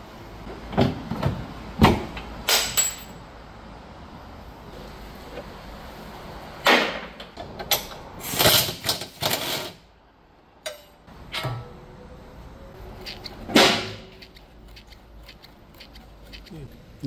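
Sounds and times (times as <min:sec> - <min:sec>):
metal parts knocking and rattling: 0:13.0 - 0:16.6.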